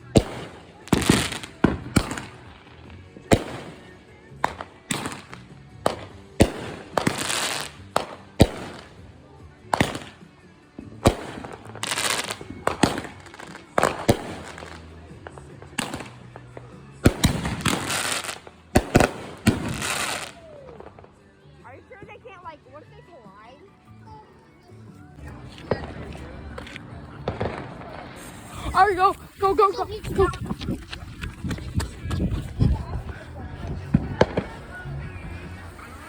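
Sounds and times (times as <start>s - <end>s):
fireworks bangs: 0.0s - 2.6s, 3.2s - 9.0s, 11.0s - 21.0s, 25.5s - 36.0s
fireworks hissing and crackling: 0.0s - 10.3s, 10.9s - 21.0s, 25.3s - 36.0s.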